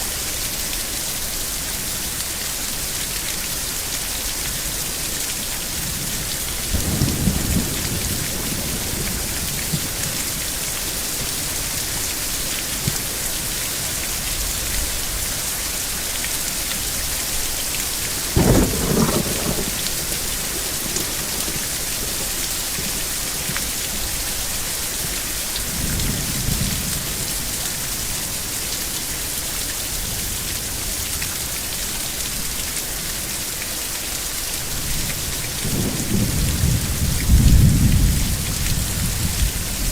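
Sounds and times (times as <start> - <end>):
steady rain hiss: 0.0 - 39.9
thunder rolling: 6.7 - 10.2, 18.0 - 23.2.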